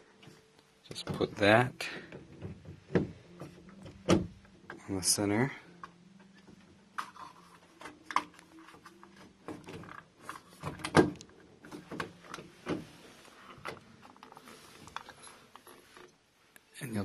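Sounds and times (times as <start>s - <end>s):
door lock parts clicking and knocking: 0.9s - 4.8s, 9.4s - 12.8s.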